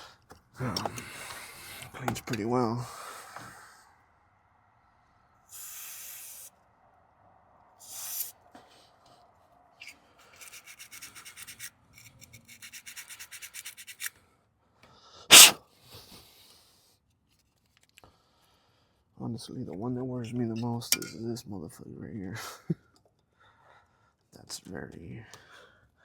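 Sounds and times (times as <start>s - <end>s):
hissing sprays of cleaner: 5.5s - 6.5s, 15.3s - 15.6s
brush scrubbing rapidly: 10.4s - 14.1s, 15.3s - 15.6s.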